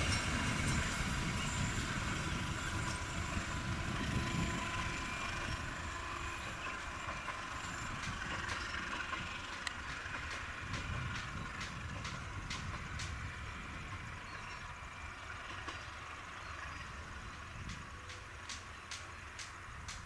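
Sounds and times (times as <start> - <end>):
passing train rumble: 0.0 - 20.0
faint clicks: 17.6 - 20.0.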